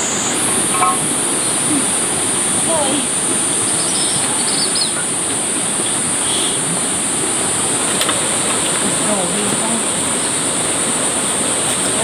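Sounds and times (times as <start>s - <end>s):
high-pitched drone: 0.0s - 3.7s
water rushing: 0.0s - 12.0s
bird chirps: 3.6s - 5.1s.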